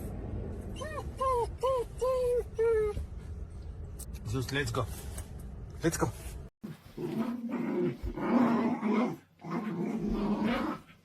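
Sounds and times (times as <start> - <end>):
pet growling: 6.7 - 11.0.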